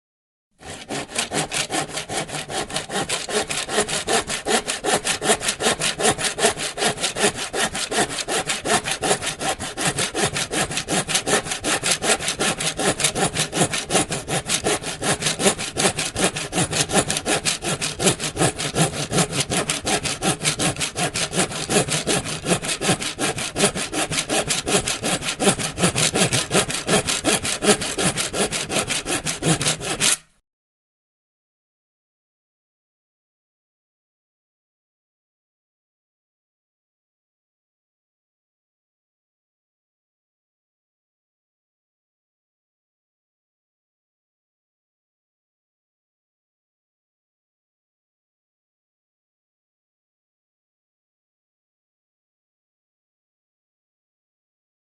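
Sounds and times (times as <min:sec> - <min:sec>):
hand saw cutting wood: 0:00.6 - 0:30.4.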